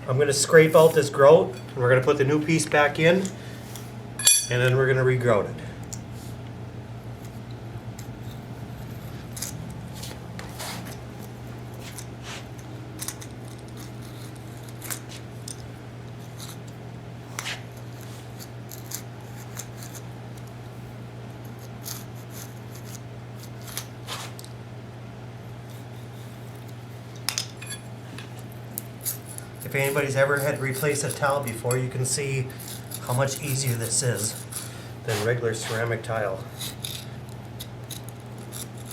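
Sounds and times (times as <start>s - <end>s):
steady low hum: 0.0s - 38.9s
hand tool scraping grout: 29.0s - 37.1s.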